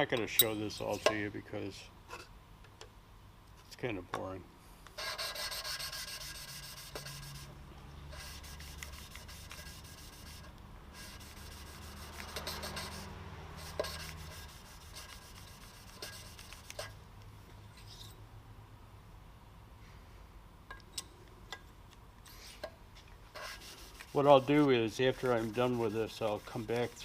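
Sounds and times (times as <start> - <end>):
gritty rubbing of valve lapping: 23.4 - 27.0.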